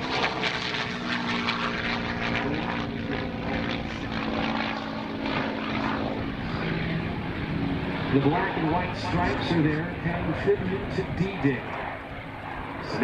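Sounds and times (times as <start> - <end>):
propeller plane engine droning: 0.0 - 13.0.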